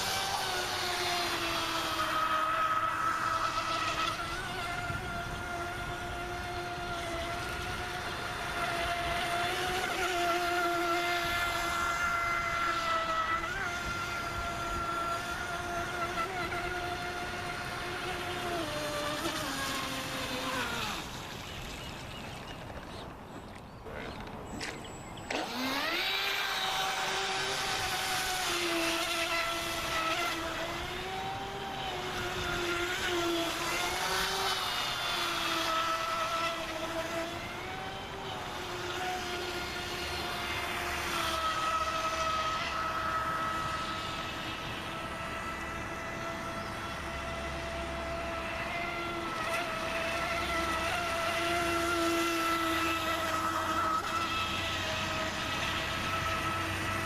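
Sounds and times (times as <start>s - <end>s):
electric motor whining: 0.0s - 57.0s.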